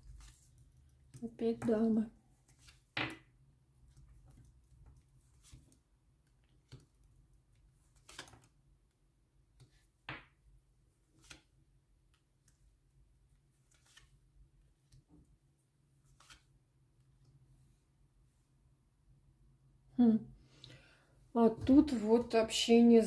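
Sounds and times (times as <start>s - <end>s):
cards handled on table: 2.4s - 3.3s, 16.1s - 16.5s.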